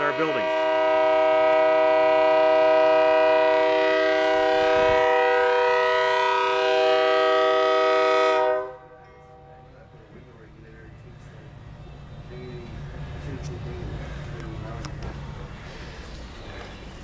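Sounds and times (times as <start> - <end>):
locomotive air horn chord: 0.0 - 9.7.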